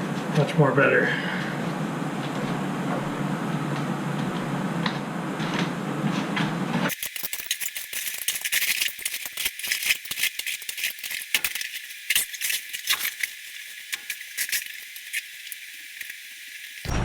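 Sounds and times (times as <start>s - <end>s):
tile debris clattering: 6.9s - 13.3s.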